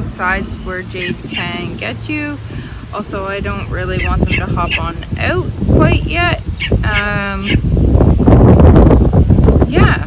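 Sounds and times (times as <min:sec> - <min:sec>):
wind buffeting microphone: 0:00.0 - 0:10.0.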